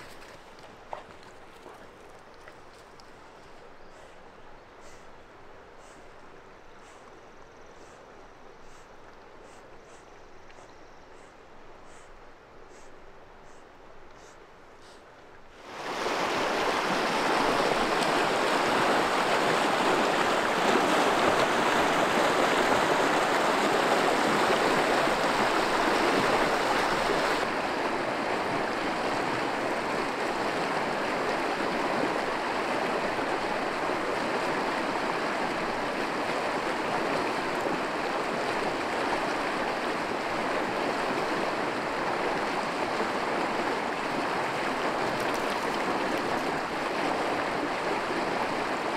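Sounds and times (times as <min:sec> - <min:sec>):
river rushing: 0:15.5 - 0:48.9.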